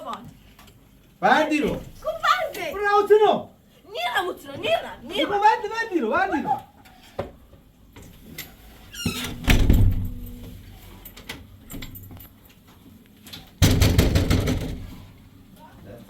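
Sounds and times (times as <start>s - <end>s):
heavy thump: 9.4s - 10.6s.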